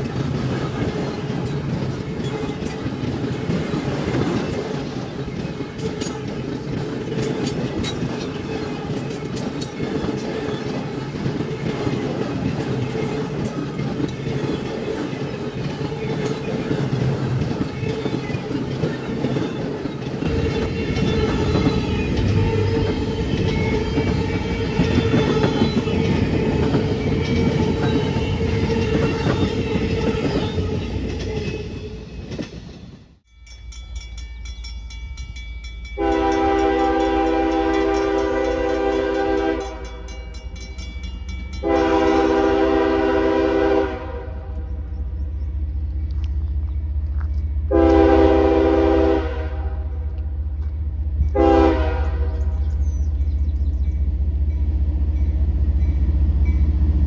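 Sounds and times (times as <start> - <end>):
train wheels rumbling on rail: 0.0 - 57.0
locomotive air horn: 20.3 - 26.9, 36.0 - 40.0, 41.6 - 44.6, 47.7 - 49.9, 51.3 - 52.5.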